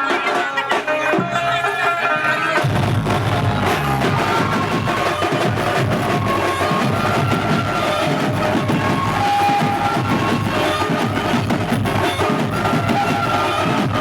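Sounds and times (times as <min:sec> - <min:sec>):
rapid heavy drumming: 0:00.0 - 0:14.0
held melody line: 0:01.0 - 0:14.0.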